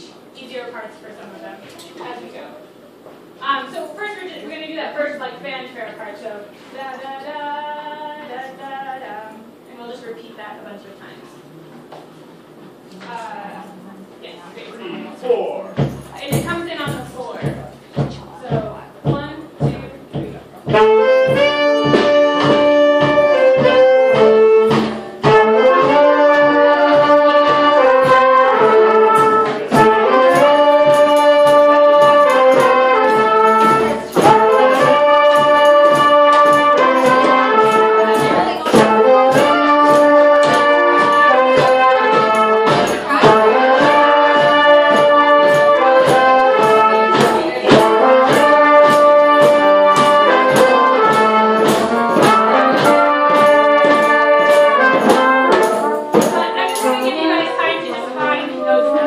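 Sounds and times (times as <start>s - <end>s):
percussion beat: 14.2s - 59.0s
brass band playing cumbia: 14.6s - 59.0s.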